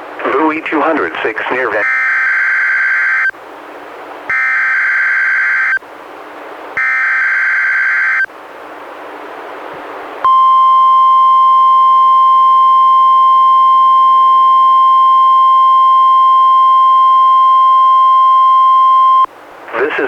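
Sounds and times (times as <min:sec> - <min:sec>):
receiver hiss: 0:00.0 - 0:03.4, 0:10.2 - 0:20.0
steady warning alarm tone: 0:01.8 - 0:03.4, 0:04.3 - 0:05.8, 0:06.8 - 0:08.3, 0:10.2 - 0:19.3.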